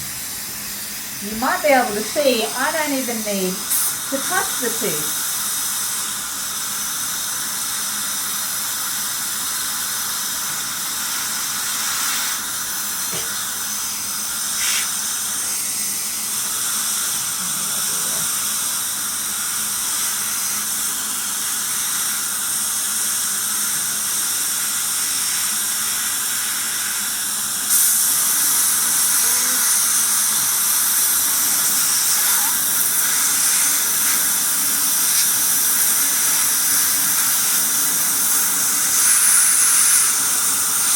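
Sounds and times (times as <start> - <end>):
dental suction: 0.2 - 40.9
air polisher spray hissing: 9.8 - 40.9.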